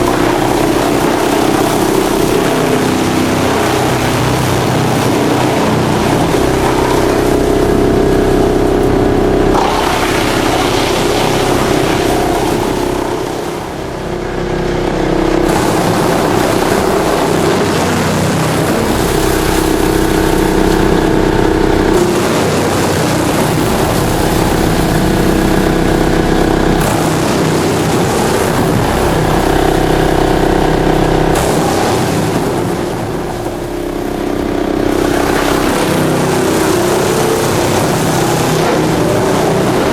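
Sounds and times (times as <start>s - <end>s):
wood chipper running: 0.0s - 39.9s.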